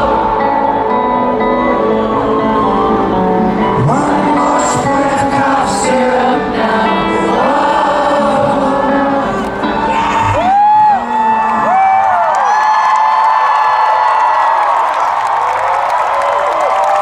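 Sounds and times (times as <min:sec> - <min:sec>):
long held sung notes: 0:00.0 - 0:11.8.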